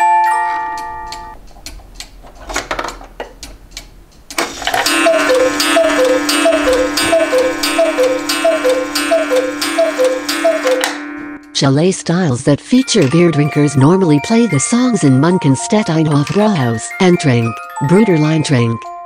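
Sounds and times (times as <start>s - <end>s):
music box tune: 0.0s - 1.4s, 4.7s - 19.0s
clock ticking: 0.0s - 19.0s
steady hum: 0.8s - 12.8s
cuckoo clock call: 4.6s - 11.9s, 12.8s - 19.0s.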